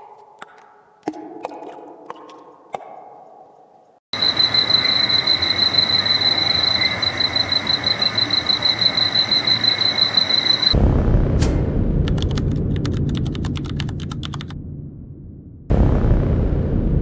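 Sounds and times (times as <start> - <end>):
high-pitched whistle: 4.2 - 10.8
low rumbling noise: 4.2 - 17.0.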